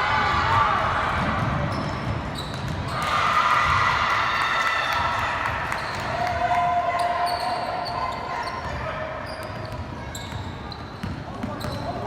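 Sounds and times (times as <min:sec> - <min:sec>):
basketball bouncing on wooden court: 0:00.2 - 0:03.0, 0:09.4 - 0:12.0
sneaker squeaks: 0:01.4 - 0:03.1, 0:05.7 - 0:06.2, 0:07.0 - 0:12.0.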